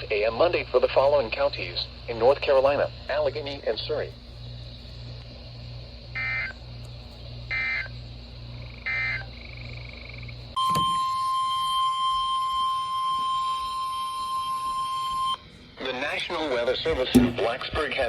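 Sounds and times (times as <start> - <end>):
low radio hum: 0.0 - 18.0
steady warning alarm tone: 5.9 - 6.7, 7.4 - 15.4
digital data bursts: 8.7 - 10.3.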